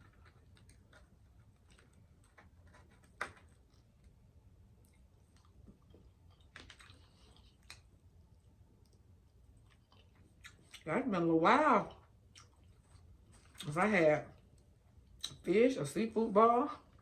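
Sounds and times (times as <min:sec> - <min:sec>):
chewing crunches: 0:04.8 - 0:10.9, 0:11.9 - 0:13.8.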